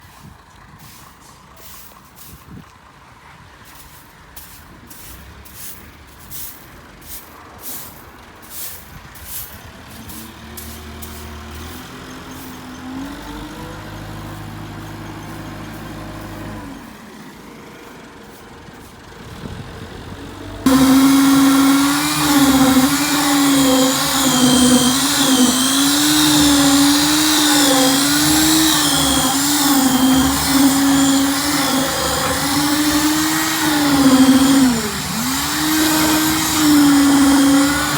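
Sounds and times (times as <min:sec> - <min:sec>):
engine running: 0:09.9 - 0:37.9.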